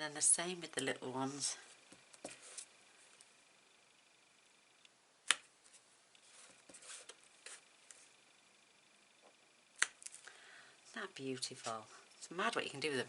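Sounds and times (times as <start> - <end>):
paper rustling and dabbing: 5.6 - 8.2.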